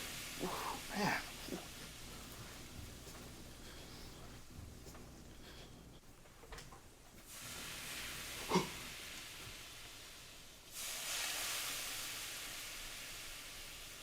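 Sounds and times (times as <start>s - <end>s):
food sizzling in a frying pan: 7.3s - 14.0s.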